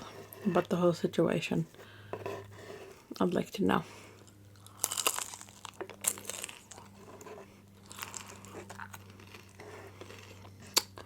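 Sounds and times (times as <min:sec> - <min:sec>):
low steady hum: 0:00.0 - 0:11.0
crunching bites and chewing: 0:04.2 - 0:11.0.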